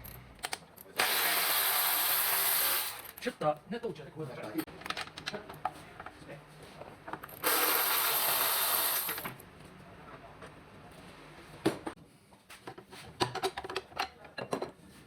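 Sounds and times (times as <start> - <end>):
power tool whirring: 1.0 - 3.2, 7.4 - 9.3.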